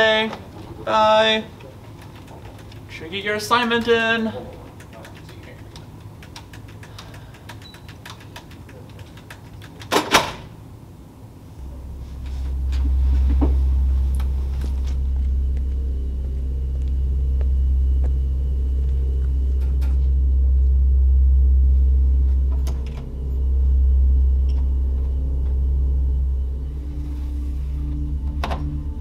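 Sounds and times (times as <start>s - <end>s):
deep rumbling drone: 10.6s - 29.0s
faint held tones: 11.6s - 29.0s.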